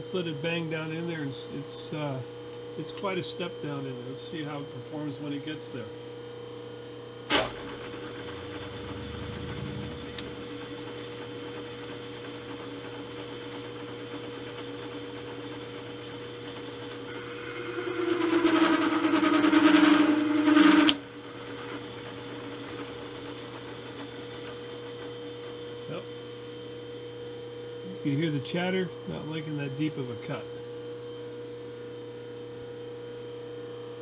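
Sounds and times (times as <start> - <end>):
milling machine spindle running: 7.3 - 25.8.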